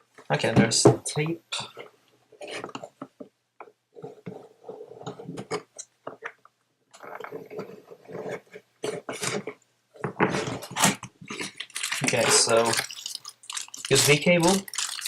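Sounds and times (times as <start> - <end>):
packaging rustling and crinkling: 7.1 - 15.0.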